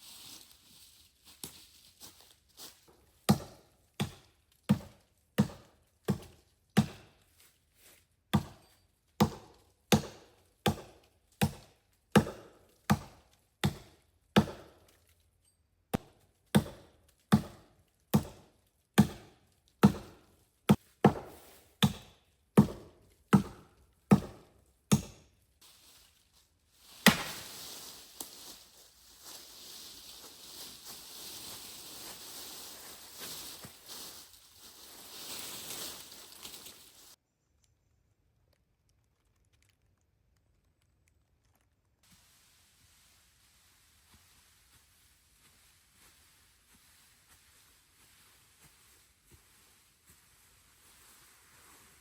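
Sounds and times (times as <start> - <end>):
wood being chopped: 3.3 - 7.1, 8.4 - 8.6, 9.2 - 14.8, 16.0 - 25.2, 27.0 - 27.6.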